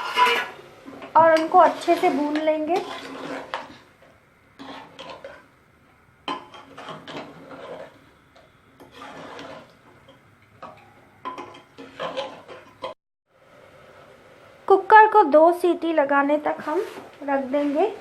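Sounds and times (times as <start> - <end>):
spoon scraping inside pot: 0.0 - 3.9, 4.6 - 5.5, 6.3 - 8.1, 8.8 - 13.0.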